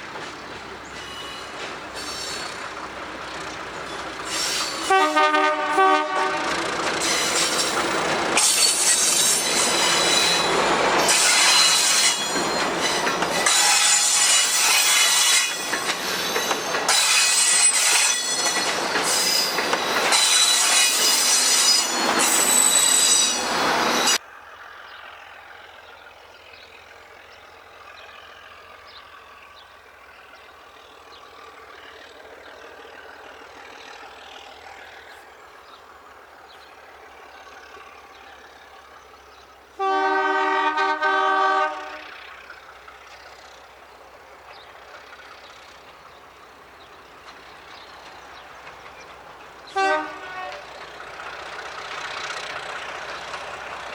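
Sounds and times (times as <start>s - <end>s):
train rumbling: 0.0s - 53.9s
train wheels squealing on rails: 0.2s - 5.2s, 6.4s - 25.8s
locomotive horn: 4.8s - 6.8s, 39.8s - 42.2s, 49.7s - 50.8s.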